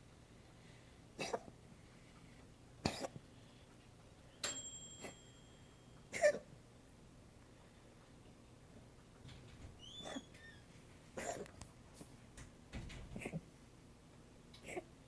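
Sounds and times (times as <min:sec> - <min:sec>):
person coughing: 0:01.2 - 0:01.5, 0:02.9 - 0:03.2, 0:06.1 - 0:06.5, 0:11.2 - 0:11.5
thin high ringing tone: 0:04.4 - 0:06.2.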